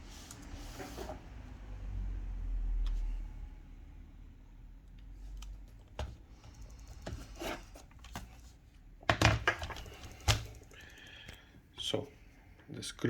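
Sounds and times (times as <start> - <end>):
laptop being handled on hard surface: 7.0 - 10.6.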